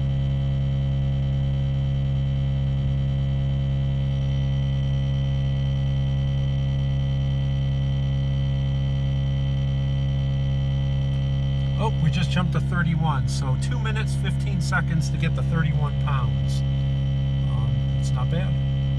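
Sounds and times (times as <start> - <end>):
air compressor droning: 0.0 - 4.8, 11.1 - 18.9.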